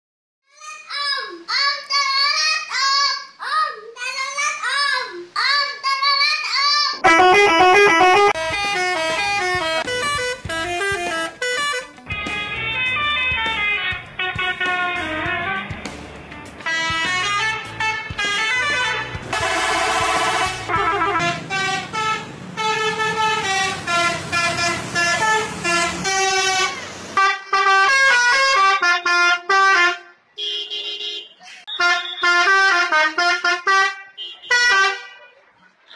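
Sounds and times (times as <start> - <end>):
musical air horn tooting: 7.0 - 15.8, 16.6 - 35.3.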